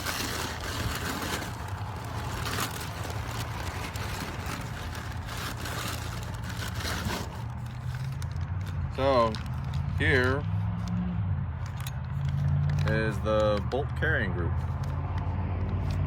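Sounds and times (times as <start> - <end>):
packaging rustling: 0.0 - 10.9
road traffic rumble: 0.0 - 16.0.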